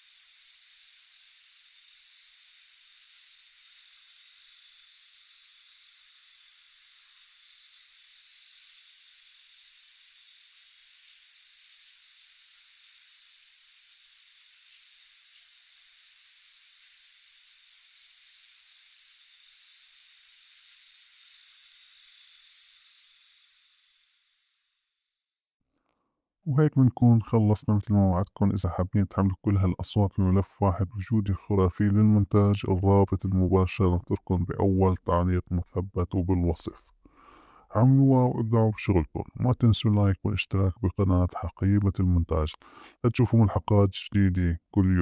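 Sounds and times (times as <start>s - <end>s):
crickets chirping: 0.0s - 25.6s.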